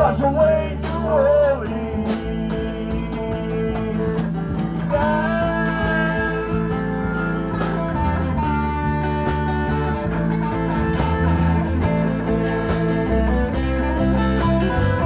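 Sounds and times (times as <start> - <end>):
bass guitar: 0.0 - 15.0
drum beat with cymbal hits: 0.0 - 15.0
electric guitar bending long notes: 0.0 - 15.0.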